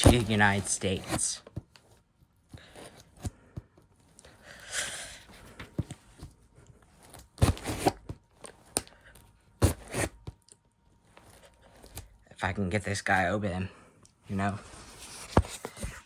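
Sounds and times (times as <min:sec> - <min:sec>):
cardboard tearing and rustling: 0:00.0 - 0:01.5, 0:07.0 - 0:08.9, 0:09.6 - 0:10.3
knocks and scraping: 0:00.0 - 0:01.7.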